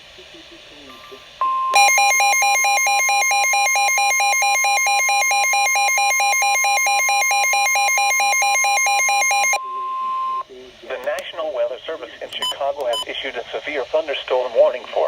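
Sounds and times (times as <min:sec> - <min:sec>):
steady warning alert tone: 0:00.8 - 0:10.4
two-pitch warbling alarm: 0:01.0 - 0:10.4.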